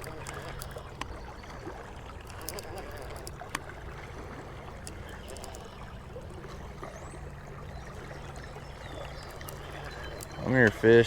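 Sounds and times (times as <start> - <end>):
light clicks: 0.0 - 3.8, 4.7 - 7.0, 9.0 - 10.8
water moving against boat: 0.0 - 11.0.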